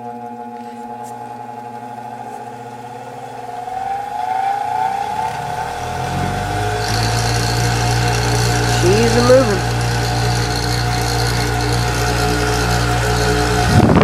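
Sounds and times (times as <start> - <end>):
bench grinder whining: 0.0 - 14.0
hiss of spinning grinder wheels: 3.6 - 14.0.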